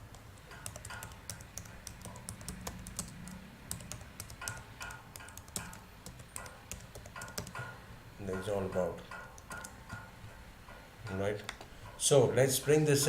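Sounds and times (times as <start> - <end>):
typing on computer keyboard: 0.1 - 7.7, 9.4 - 10.1.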